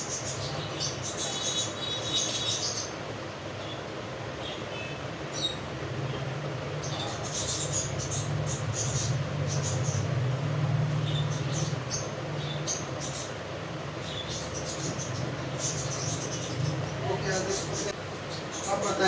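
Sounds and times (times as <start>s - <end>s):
low mechanical hum: 0.0s - 19.0s.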